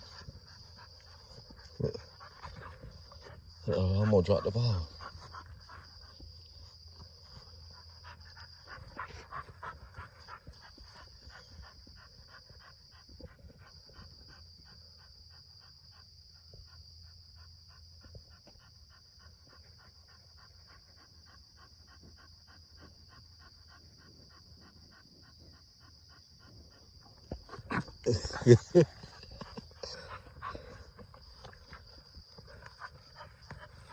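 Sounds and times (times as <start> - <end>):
dog panting: 0.0 - 33.9.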